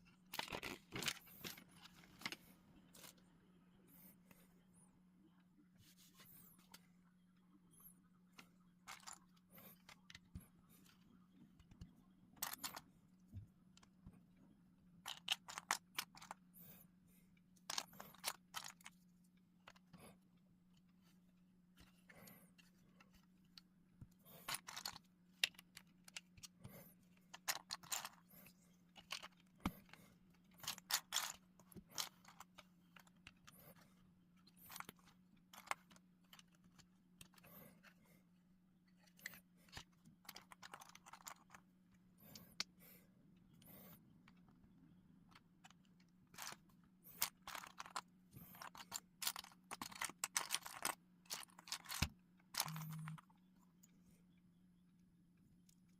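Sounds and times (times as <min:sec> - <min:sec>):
low steady hum: 0:00.0 - 0:55.9
plastic bricks clicking: 0:27.3 - 0:28.3, 0:29.0 - 0:33.8, 0:47.2 - 0:53.3.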